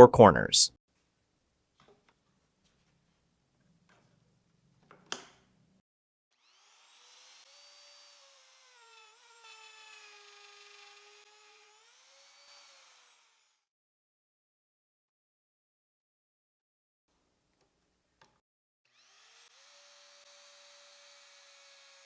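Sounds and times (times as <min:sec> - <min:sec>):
wood router whining: 0:06.4 - 0:13.6, 0:18.9 - 0:22.0.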